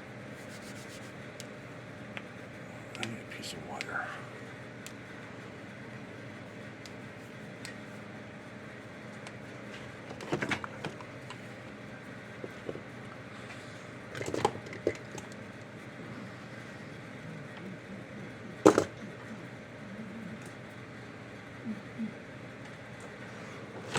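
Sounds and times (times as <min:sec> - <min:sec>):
steady room hum: 0:00.0 - 0:23.9
objects clattering on workbench: 0:18.6 - 0:19.0.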